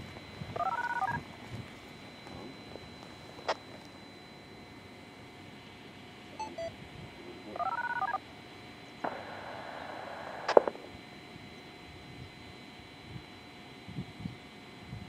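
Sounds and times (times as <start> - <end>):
dial-tone-like tones: 0.6 - 1.2, 6.4 - 6.7, 7.5 - 8.2
short beeps: 6.4 - 6.8
static hiss: 9.0 - 11.0
sharp click: 10.5 - 10.8.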